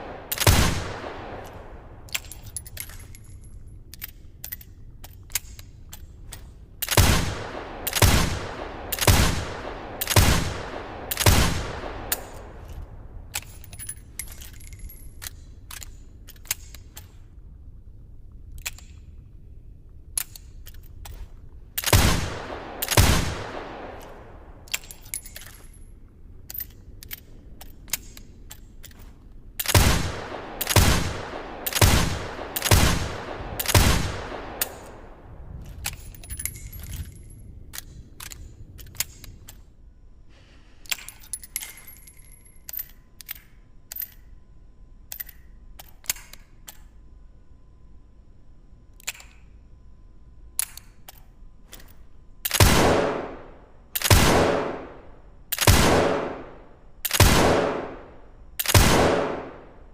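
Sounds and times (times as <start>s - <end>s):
gun handling clicks: 0.1s - 39.8s, 40.7s - 44.4s, 45.0s - 47.0s, 48.9s - 49.6s, 50.5s - 59.9s.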